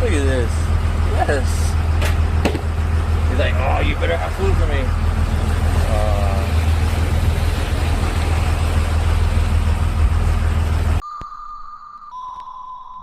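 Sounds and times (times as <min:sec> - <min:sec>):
boat engine running: 0:00.0 - 0:11.0
steady high tone: 0:09.6 - 0:13.0.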